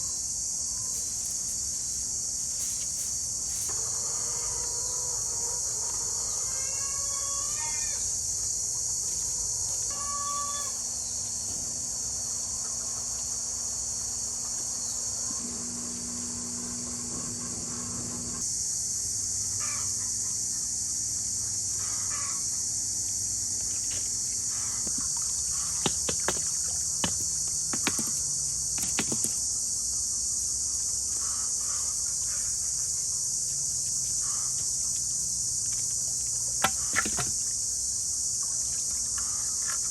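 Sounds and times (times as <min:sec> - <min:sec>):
crickets chirping: 0:00.0 - 0:39.9
rooster crowing: 0:03.7 - 0:08.0.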